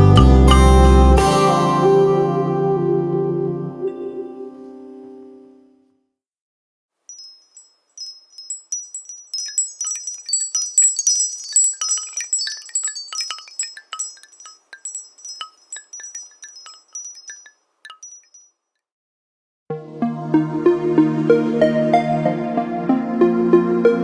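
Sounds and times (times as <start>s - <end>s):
glassy wind-chime ringtone: 7.1s - 18.6s, 21.3s - 24.0s
low ringtone notes: 19.7s - 24.0s.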